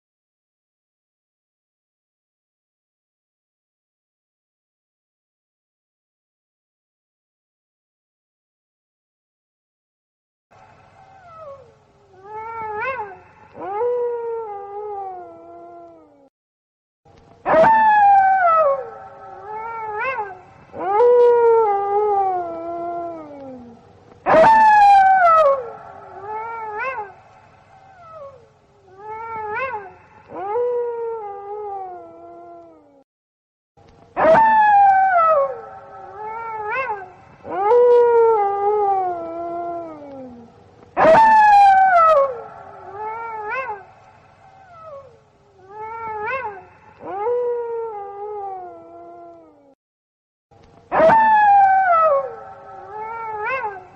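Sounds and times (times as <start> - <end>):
wolves howling: 11.0 - 16.1, 17.5 - 32.8, 34.2 - 49.6, 50.9 - 53.9.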